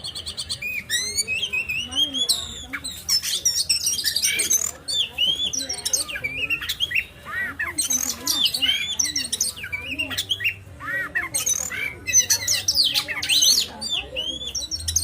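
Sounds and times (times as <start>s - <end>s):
songbirds chirping and whistling: 0.0s - 15.0s.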